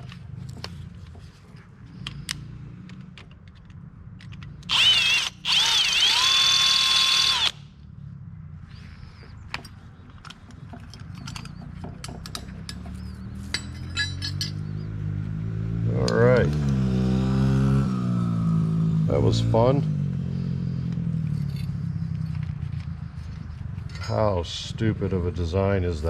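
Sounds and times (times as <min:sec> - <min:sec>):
power drill drilling: 0:04.7 - 0:07.6
tools tapping on metal: 0:09.5 - 0:14.8.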